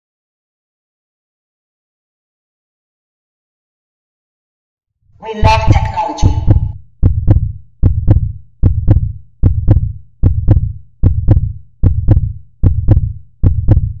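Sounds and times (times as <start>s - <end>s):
heartbeat-like double thumps: 5.4s - 14.0s.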